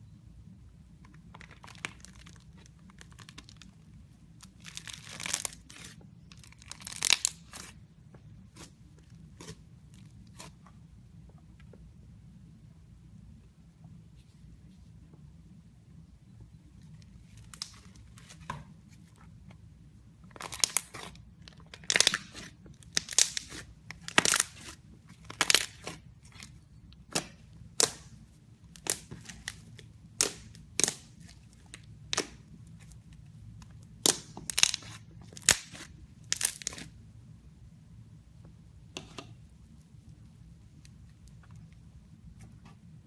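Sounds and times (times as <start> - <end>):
slime crackling: 1.1 - 10.6, 20.2 - 37.0.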